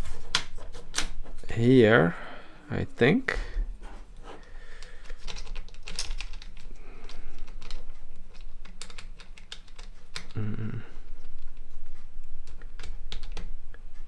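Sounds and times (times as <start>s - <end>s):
clicks of plastic parts: 4.8s - 10.4s.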